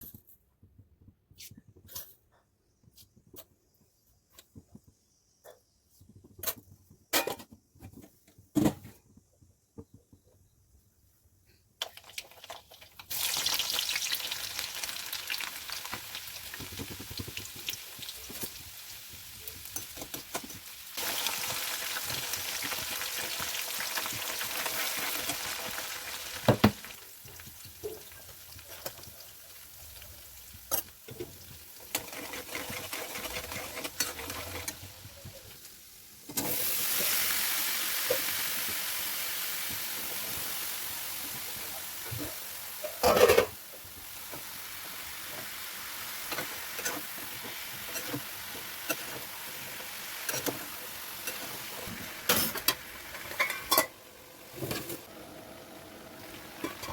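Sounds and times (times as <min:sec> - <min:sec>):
food sizzling in oil: 0:11.9 - 0:56.9.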